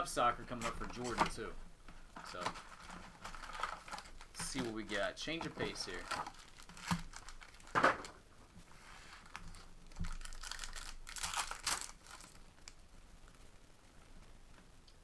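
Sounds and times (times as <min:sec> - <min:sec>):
card wrappers crinkling and tearing: 0:00.2 - 0:01.5, 0:02.1 - 0:08.2, 0:09.0 - 0:12.8.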